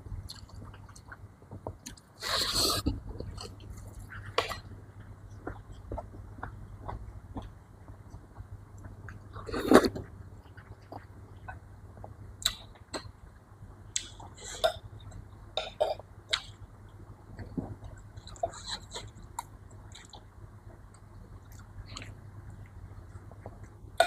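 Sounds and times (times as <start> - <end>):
person chewing wetly: 0.3 - 2.0
mouth clicks and smacks: 12.4 - 13.1.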